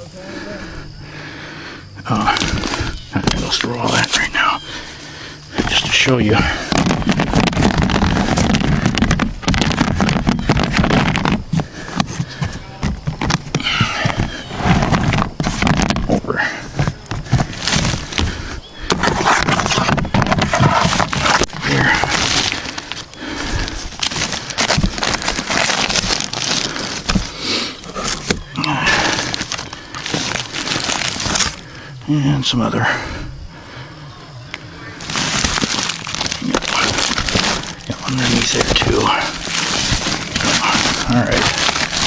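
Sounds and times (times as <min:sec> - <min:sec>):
handling rustling: 0:02.3 - 0:31.7, 0:35.0 - 0:42.0
handling knocks and clicks: 0:06.7 - 0:18.3.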